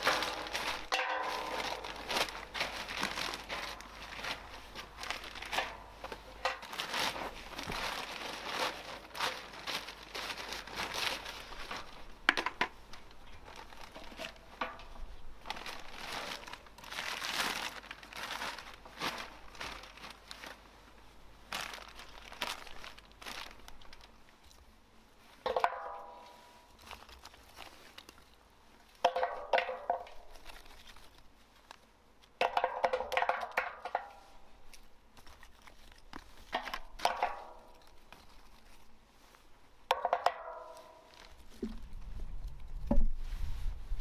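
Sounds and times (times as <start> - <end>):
material crinkling and rustling: 0.0 - 44.0.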